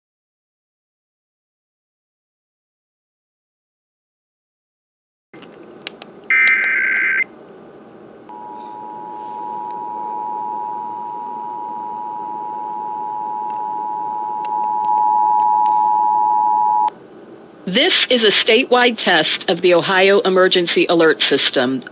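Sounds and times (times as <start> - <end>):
two-tone attention signal: 6.3 - 7.2, 8.3 - 16.9.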